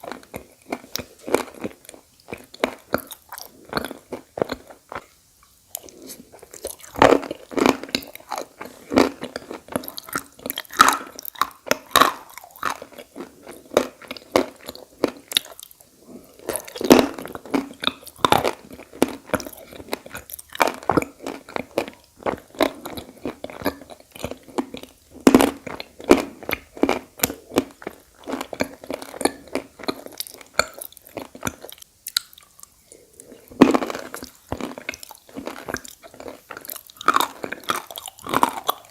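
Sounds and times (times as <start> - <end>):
clay being bitten and chewed: 16.4 - 38.9.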